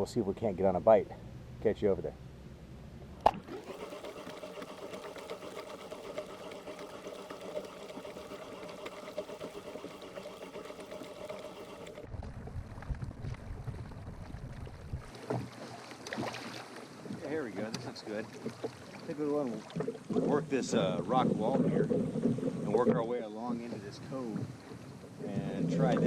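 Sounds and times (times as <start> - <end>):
water noise: 3.2 - 26.0
electric motor whining: 3.5 - 12.1
wind noise: 12.1 - 15.2.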